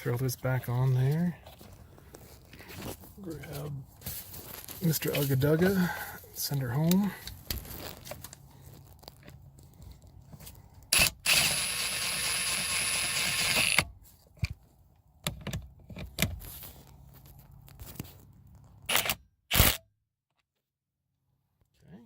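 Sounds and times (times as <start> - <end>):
impact wrench running: 10.9 - 13.8.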